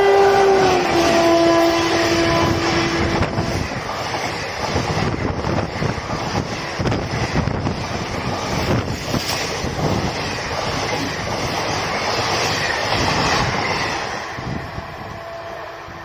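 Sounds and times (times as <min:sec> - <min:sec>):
train passing at speed: 0:00.0 - 0:16.0
train wheels clattering over rail joints: 0:03.1 - 0:14.1.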